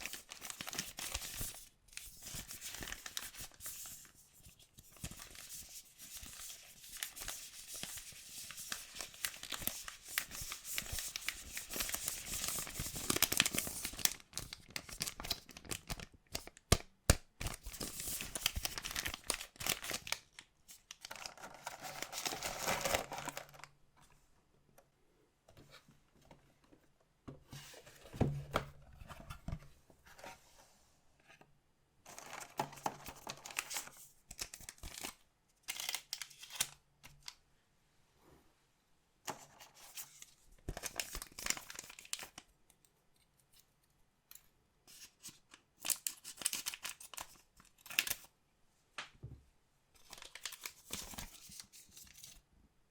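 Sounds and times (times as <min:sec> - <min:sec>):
packaging tearing and crinkling: 0:00.0 - 0:01.6, 0:08.7 - 0:16.6, 0:17.4 - 0:20.2.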